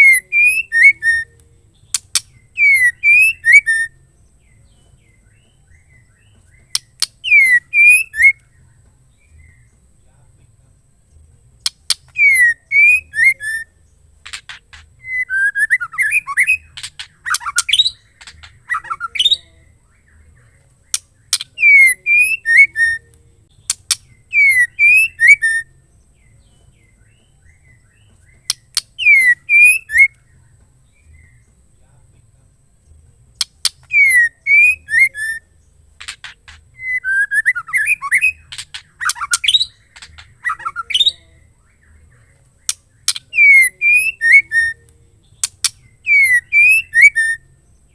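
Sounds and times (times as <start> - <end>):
bird calling with sliding whistles: 0.0 - 4.0, 5.7 - 8.5, 11.6 - 19.6, 20.9 - 23.1, 23.7 - 25.7, 28.4 - 30.2, 33.4 - 41.3, 42.6 - 47.4.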